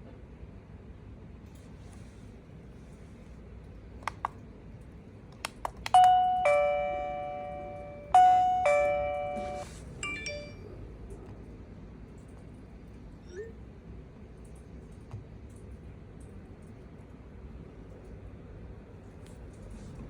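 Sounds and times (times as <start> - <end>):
doorbell ding-dong chime: 6.0 - 10.7
short high beeps: 6.2 - 10.6.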